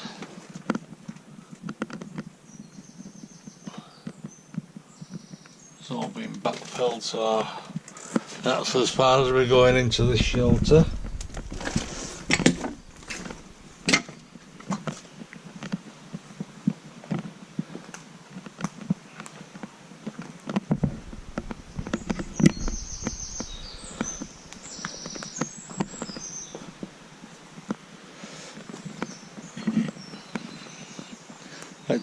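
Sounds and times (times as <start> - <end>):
footsteps crunching over rubble: 8.1 - 27.8
high chirping: 8.9 - 14.5, 20.8 - 27.2.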